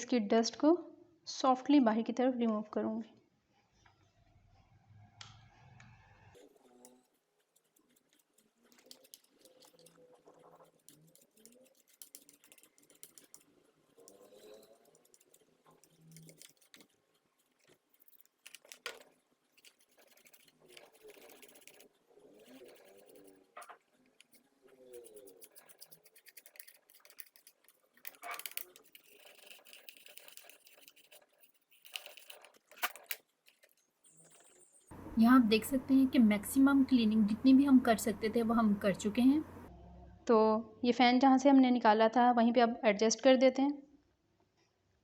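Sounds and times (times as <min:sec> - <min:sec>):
toothbrush bristles scratching vent: 0:06.0 - 0:34.9.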